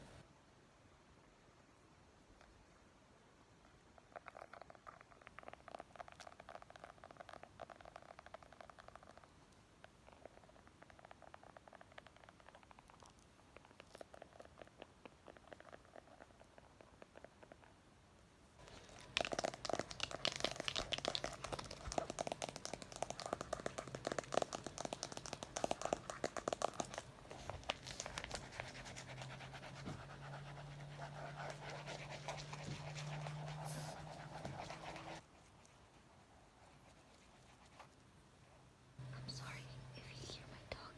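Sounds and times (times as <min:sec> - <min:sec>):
scratching and tapping on book: 0:18.6 - 0:35.8.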